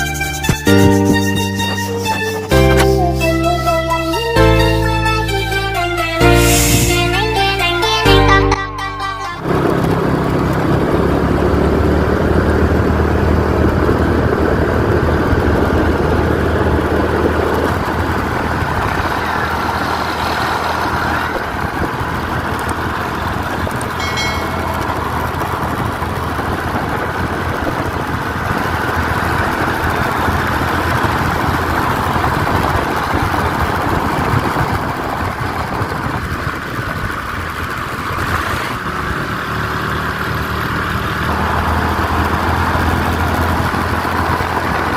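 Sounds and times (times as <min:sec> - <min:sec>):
road noise: 0:00.0 - 0:44.9
vehicle engine running: 0:00.0 - 0:44.9
high beep: 0:24.0 - 0:25.3.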